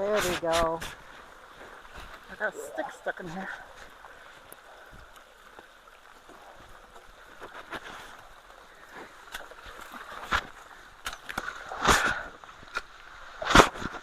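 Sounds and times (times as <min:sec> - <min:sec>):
water running at culvert: 0:00.0 - 0:14.0.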